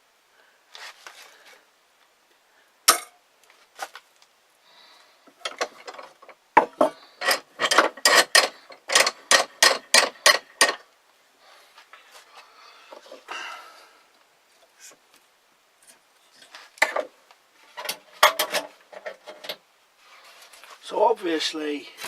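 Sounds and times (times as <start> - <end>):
hand saw cutting wood: 7.2 - 10.8.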